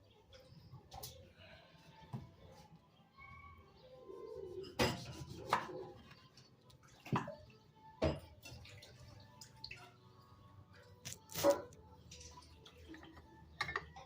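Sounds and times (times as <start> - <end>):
kitchenware clinking and knocking: 4.6 - 5.9, 8.0 - 8.4, 13.0 - 14.0.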